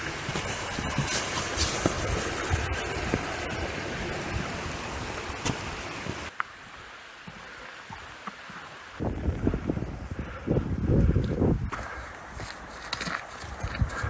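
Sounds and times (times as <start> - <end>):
brook water rushing: 0.0 - 9.9.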